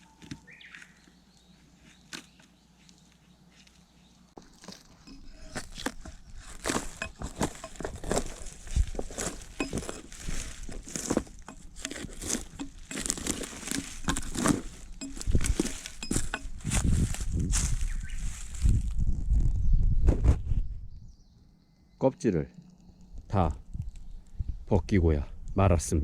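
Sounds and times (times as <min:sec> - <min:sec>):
bark cracking and scraping: 0:00.0 - 0:18.7, 0:22.5 - 0:24.4.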